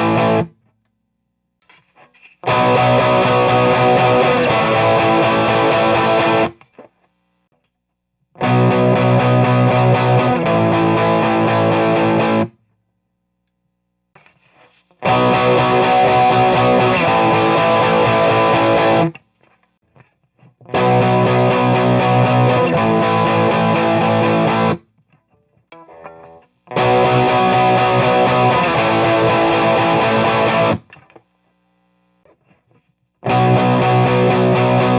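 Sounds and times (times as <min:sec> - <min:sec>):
electric guitar power-chord riff: 0:00.0 - 0:00.5, 0:02.4 - 0:06.6, 0:08.4 - 0:12.5, 0:15.0 - 0:19.2, 0:20.7 - 0:24.8, 0:25.8 - 0:30.9, 0:33.2 - 0:34.9.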